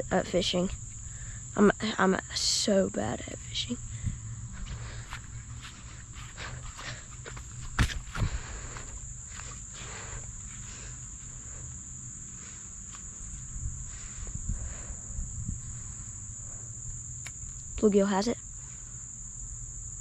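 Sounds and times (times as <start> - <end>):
high-pitched insect chorus: 0.0 - 20.0
soft scuffs: 4.5 - 9.8.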